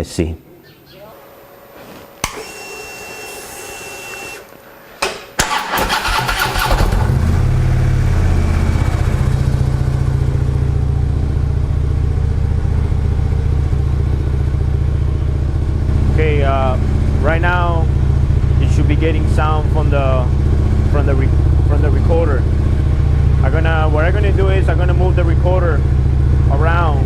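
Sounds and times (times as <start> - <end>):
short steady whine: 2.2 - 5.5
motorcycle starter cranking: 5.4 - 7.3
motorcycle engine idling: 5.8 - 27.0.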